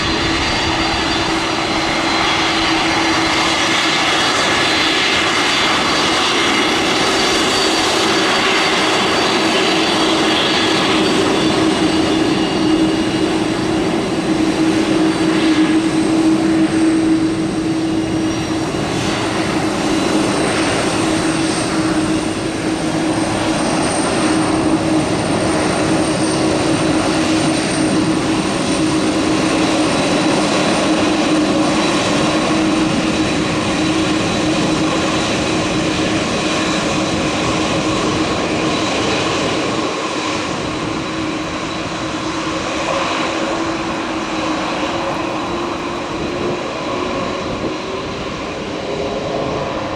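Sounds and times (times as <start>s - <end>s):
high engine whine: 0.0s - 49.9s
jet engines running: 0.0s - 49.9s.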